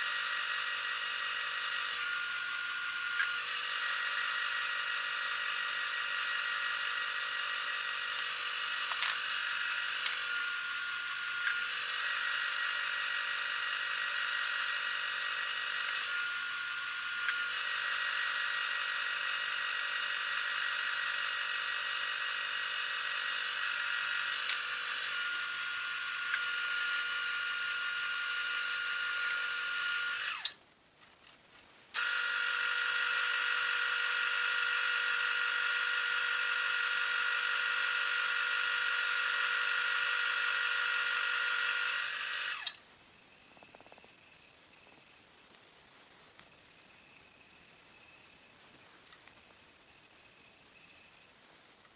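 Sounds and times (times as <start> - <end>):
wood lathe motor whining: 0.0 - 30.6, 32.0 - 42.8.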